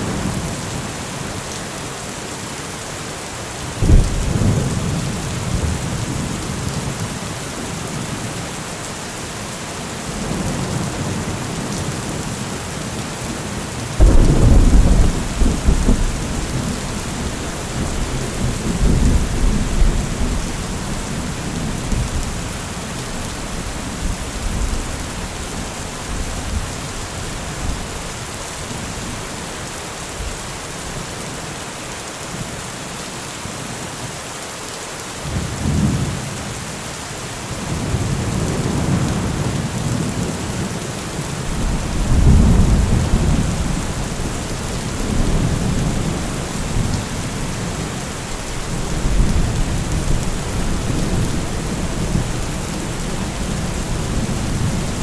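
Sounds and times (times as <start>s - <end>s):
heavy rain: 0.0s - 55.0s
rolling thunder: 3.8s - 6.6s, 14.0s - 22.6s, 41.5s - 55.0s
loud thunder clap: 14.0s - 16.8s.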